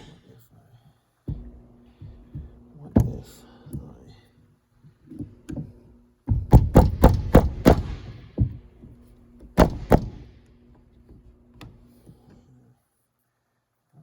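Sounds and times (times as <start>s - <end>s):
tool knocking on metal parts: 1.3s - 4.0s, 5.1s - 11.7s.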